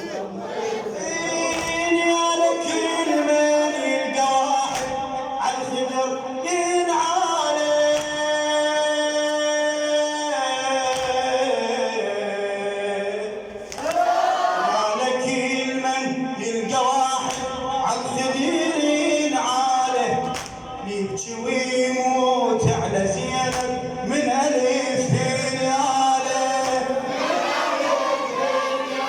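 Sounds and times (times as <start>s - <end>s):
male voices singing choir-like: 0.0s - 17.3s, 24.3s - 29.0s.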